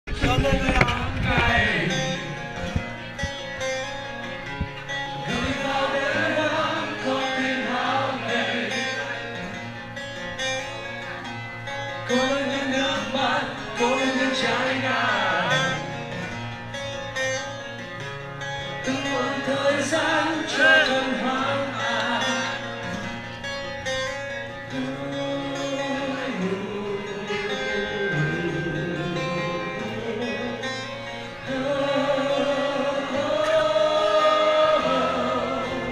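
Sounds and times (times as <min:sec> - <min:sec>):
electric guitar: 0:00.0 - 0:35.9
person singing: 0:24.7 - 0:35.9.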